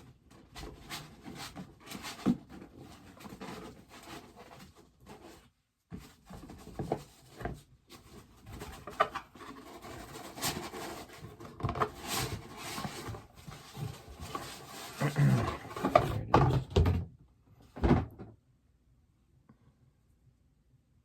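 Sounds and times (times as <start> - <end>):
packaging rustling and scraping: 0.3 - 16.6.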